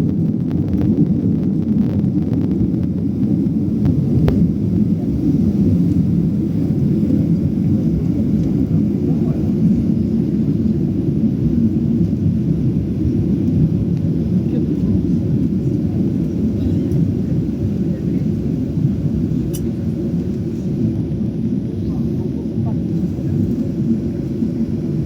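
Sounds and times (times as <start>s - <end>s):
airplane cabin rumble: 0.0s - 25.0s.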